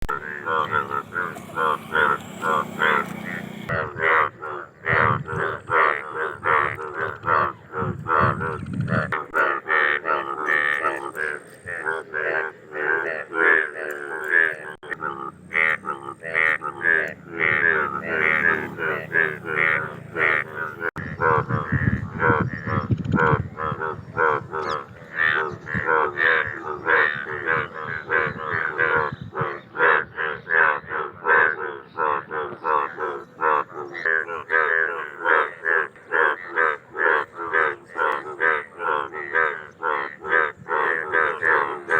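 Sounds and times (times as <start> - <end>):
bullfrogs croaking in chorus: 0.0 - 41.9.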